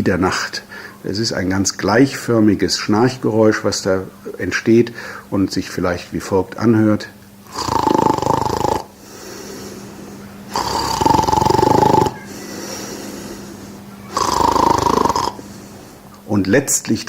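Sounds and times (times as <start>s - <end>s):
breathing out: 0.7s - 1.0s, 5.0s - 5.3s, 9.0s - 10.8s, 12.1s - 16.2s
person snoring: 7.5s - 16.2s.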